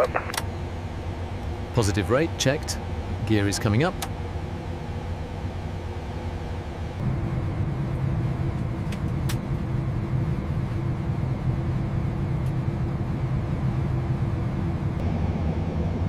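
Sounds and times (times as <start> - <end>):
jet airliner rumble: 0.0 - 16.0.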